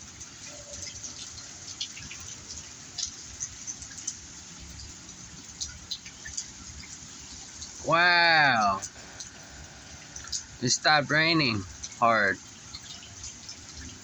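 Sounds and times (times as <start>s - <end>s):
rain falling: 0.0s - 14.0s
drops ticking nearby: 1.1s - 14.0s.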